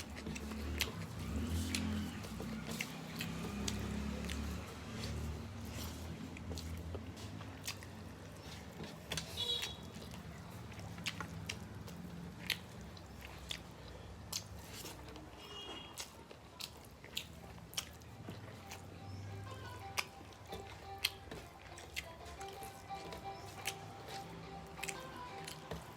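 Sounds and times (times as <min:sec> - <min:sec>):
chewing: 0:00.0 - 0:25.9.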